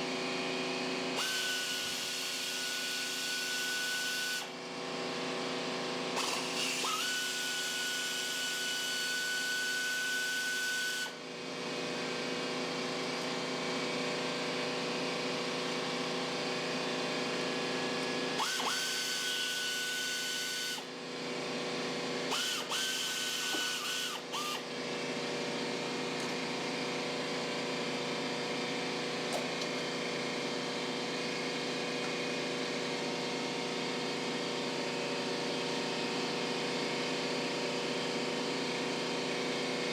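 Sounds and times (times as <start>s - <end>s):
small electric motor whirring: 1.2s - 4.5s, 6.2s - 11.1s, 18.4s - 20.9s, 22.3s - 24.6s.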